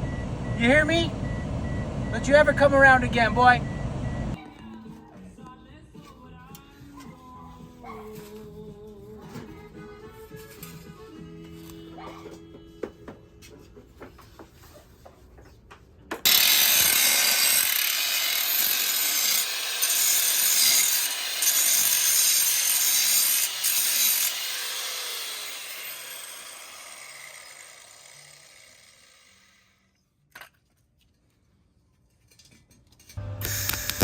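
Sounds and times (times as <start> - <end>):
power tool running with hiss: 16.3 - 29.6, 33.2 - 34.0.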